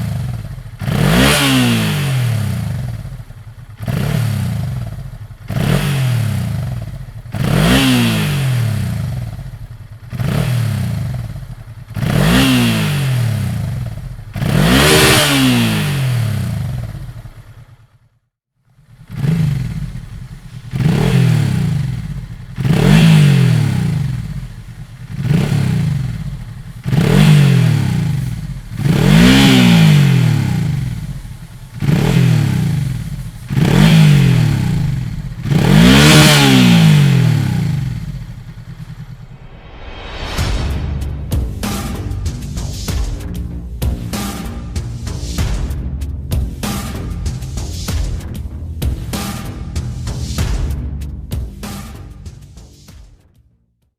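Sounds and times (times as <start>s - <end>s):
motorcycle engine revving: 0.0s - 53.0s.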